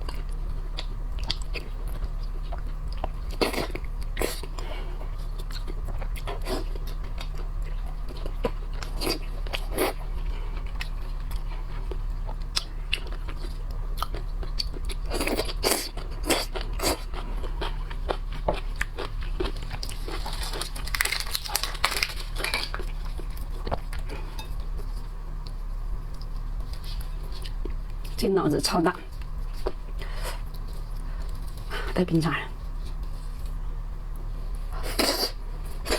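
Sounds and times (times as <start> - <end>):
wet chewing: 0.0 - 28.1
low hum: 0.0 - 35.9
shells cracking and crunching: 19.0 - 23.2.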